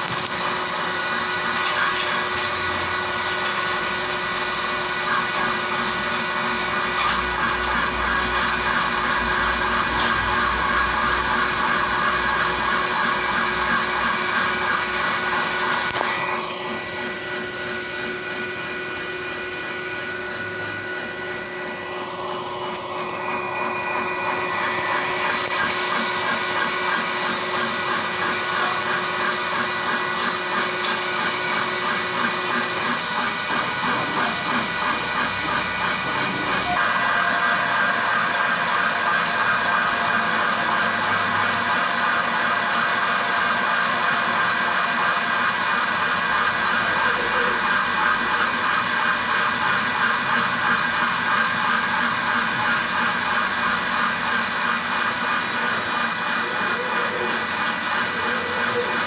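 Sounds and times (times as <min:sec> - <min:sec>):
metal lathe whining: 0:00.0 - 0:59.0.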